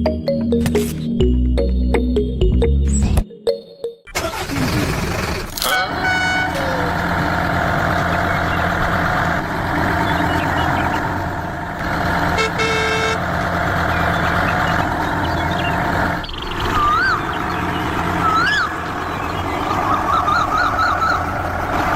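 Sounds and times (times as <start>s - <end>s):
vehicle engine running: 4.2s - 21.9s
short horn toot: 5.6s - 6.9s.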